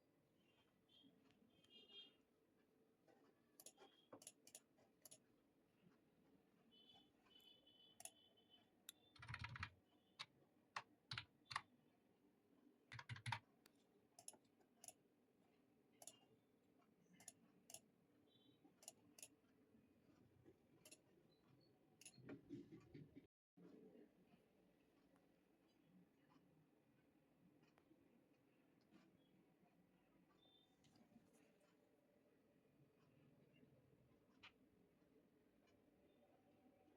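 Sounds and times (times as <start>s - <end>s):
computer keyboard key presses: 8.9s - 11.7s, 12.9s - 13.4s.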